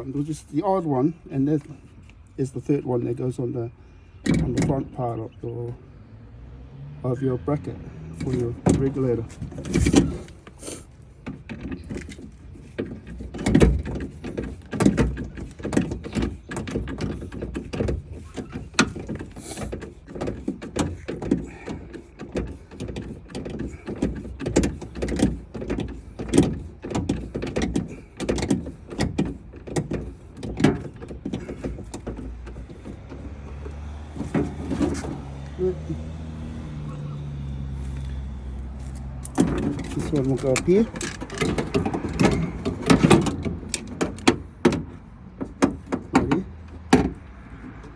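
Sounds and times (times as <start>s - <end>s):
metal parts clicking and clunking: 8.0s - 36.4s, 37.4s - 47.9s.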